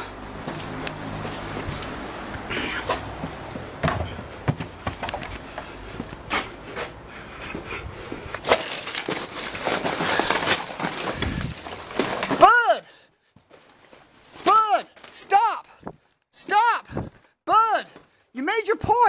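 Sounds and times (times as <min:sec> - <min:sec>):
household items clattering: 0:00.3 - 0:12.6.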